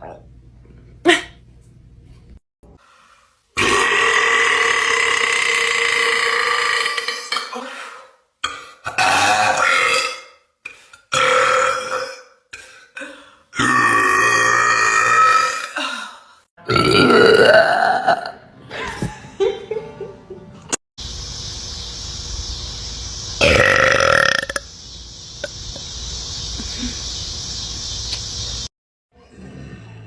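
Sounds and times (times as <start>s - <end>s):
woman belching loudly: 3.6s - 7.6s, 8.9s - 10.2s, 11.2s - 12.2s, 13.6s - 15.8s, 16.6s - 18.4s, 23.4s - 24.6s.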